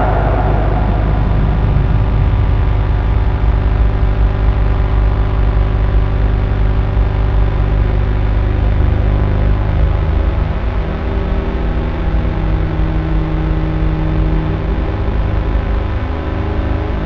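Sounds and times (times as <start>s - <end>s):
synthesizer drone: 0.0s - 4.2s.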